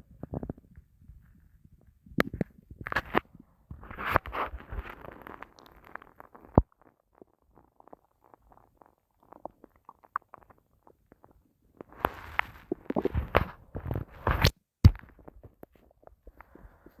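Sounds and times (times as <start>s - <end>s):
stomach growling and gurgling: 0.0s - 17.0s
small bubbly pops: 3.8s - 15.6s.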